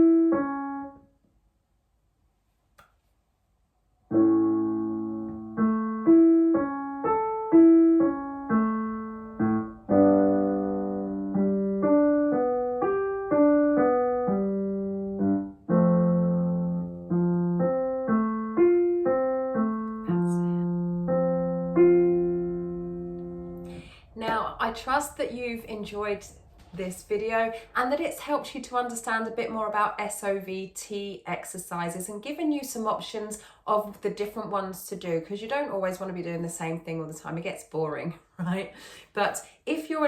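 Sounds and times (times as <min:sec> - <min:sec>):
piano playing broken chords: 0:00.0 - 0:01.0, 0:04.1 - 0:26.8.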